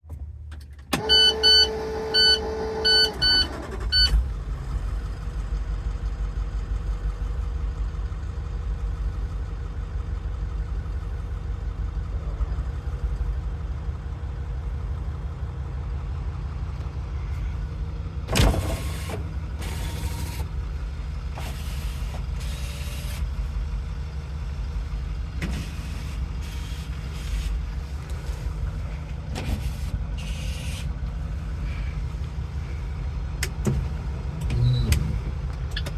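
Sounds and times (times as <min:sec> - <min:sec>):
diesel engine idling: 0:00.2 - 0:35.9
dash warning beeps: 0:01.0 - 0:04.2.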